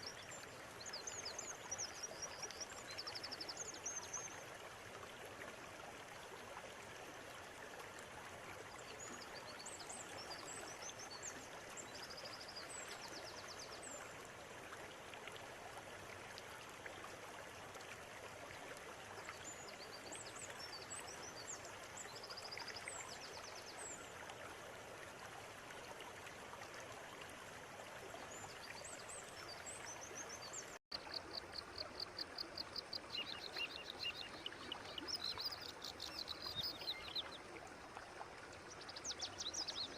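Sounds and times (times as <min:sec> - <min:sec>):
river water flowing: 0:00.0 - 0:39.9
birds chirping: 0:30.1 - 0:37.4.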